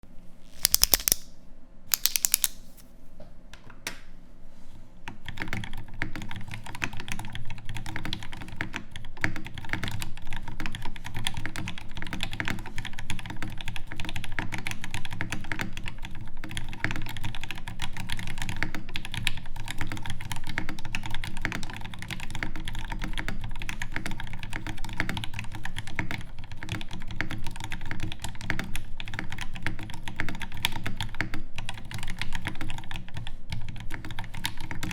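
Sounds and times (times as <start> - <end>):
mechanical keyboard typing: 0.5 - 1.3, 1.9 - 2.8.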